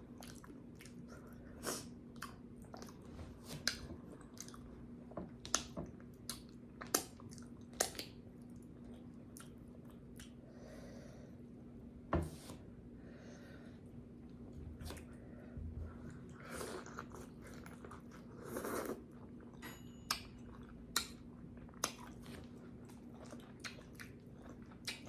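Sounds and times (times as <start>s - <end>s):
steady low hum: 0.0s - 25.0s
chewing and wet lip smacking: 0.2s - 4.7s, 5.4s - 10.4s, 20.1s - 25.0s.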